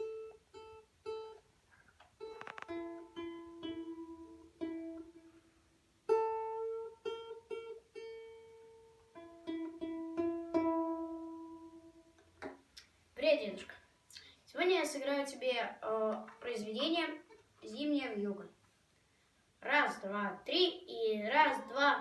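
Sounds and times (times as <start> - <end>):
balalaika tremolo plucking: 2.2 - 5.4, 6.1 - 12.6
balalaika plucked notes: 2.2 - 12.8.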